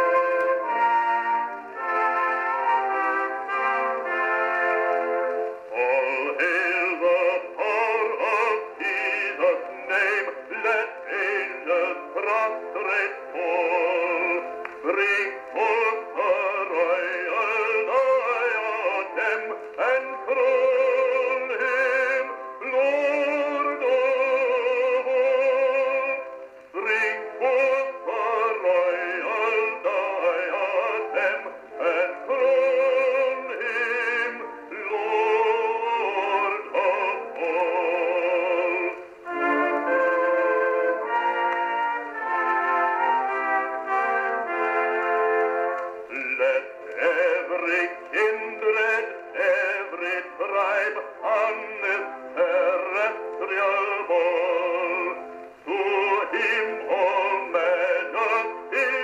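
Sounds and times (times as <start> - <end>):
man singing a hymn: 0.0 - 59.0.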